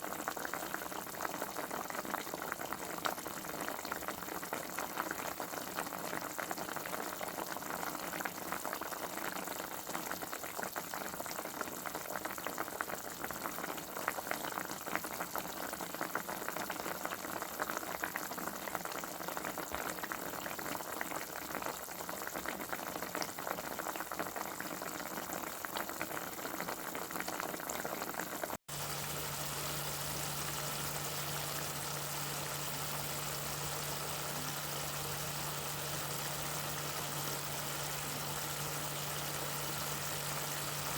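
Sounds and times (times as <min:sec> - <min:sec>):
liquid boiling: 0:00.0 - 0:40.9
low machine hum: 0:28.7 - 0:40.9.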